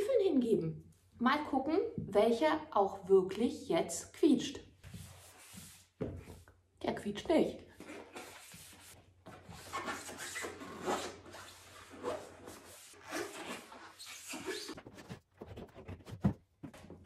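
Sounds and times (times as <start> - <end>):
rubber boots rubbing and scraping: 7.8 - 17.0.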